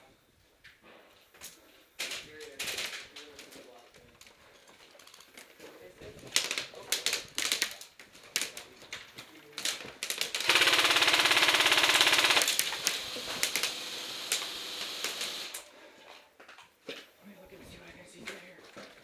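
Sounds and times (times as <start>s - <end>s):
airsoft gun full-auto burst: 10.0s - 15.7s.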